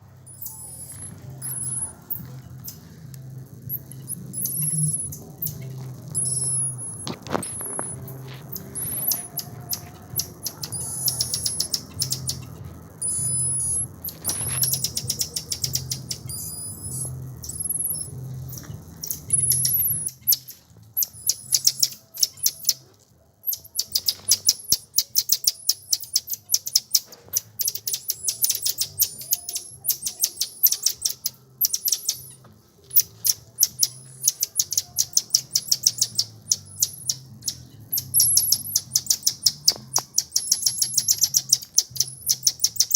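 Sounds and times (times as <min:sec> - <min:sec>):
birds chirping and twittering: 0:00.1 - 0:02.9, 0:03.7 - 0:22.8, 0:23.4 - 0:42.9.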